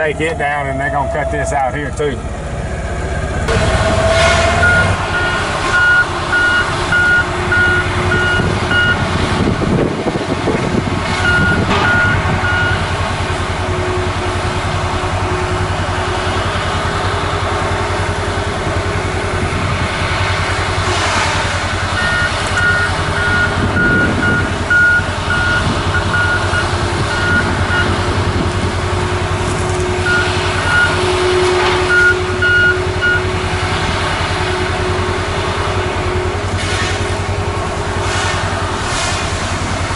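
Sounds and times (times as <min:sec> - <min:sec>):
diesel machinery running: 0:00.0 - 0:39.9
reverse alarm beeping: 0:04.6 - 0:09.0, 0:11.2 - 0:12.8, 0:22.0 - 0:28.0, 0:30.0 - 0:33.4.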